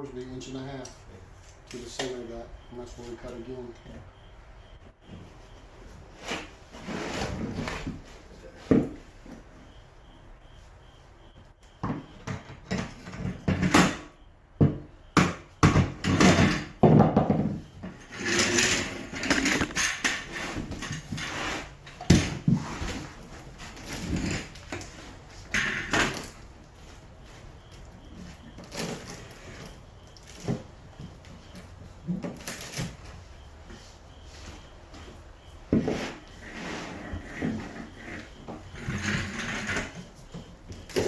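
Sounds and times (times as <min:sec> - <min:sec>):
lumber scraping: 0:05.0 - 0:09.8, 0:17.7 - 0:41.0
wooden knocks and thumps: 0:07.4 - 0:09.4, 0:11.8 - 0:14.0, 0:14.6 - 0:21.3.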